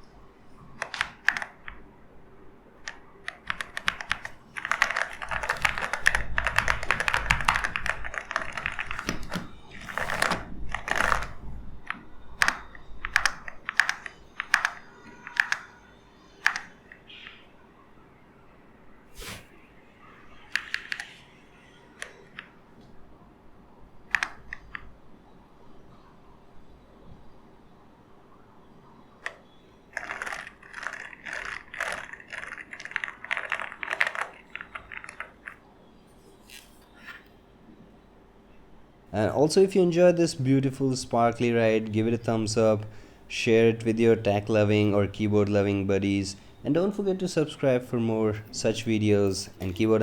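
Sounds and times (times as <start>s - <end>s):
mechanical keyboard typing: 0.8s - 1.8s, 2.8s - 15.8s, 16.4s - 17.2s, 20.5s - 21.2s, 24.1s - 24.8s, 29.2s - 35.6s.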